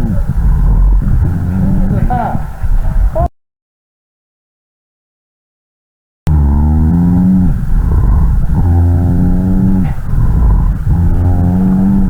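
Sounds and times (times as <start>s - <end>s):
snoring lung sound through stethoscope: 0.0s - 3.1s, 6.3s - 12.0s.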